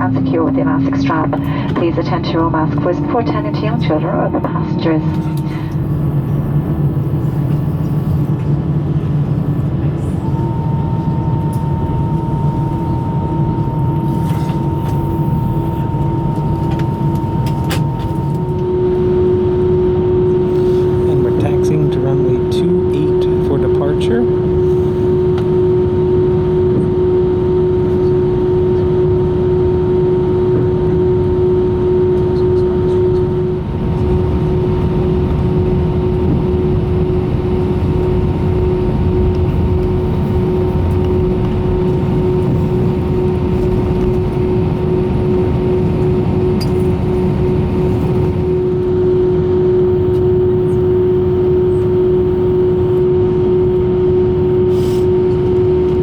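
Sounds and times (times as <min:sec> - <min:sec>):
aircraft cabin engine rumble: 0:00.0 - 0:56.0
constant whining tone: 0:00.0 - 0:56.0.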